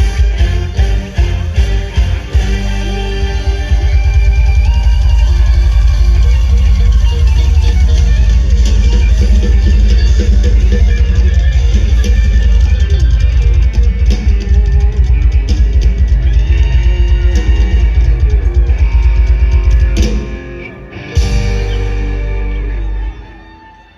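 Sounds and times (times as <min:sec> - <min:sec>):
plucked string lead: 0:00.0 - 0:16.2, 0:16.8 - 0:23.8
drum kit: 0:00.0 - 0:23.2
heavy bass: 0:00.0 - 0:23.9.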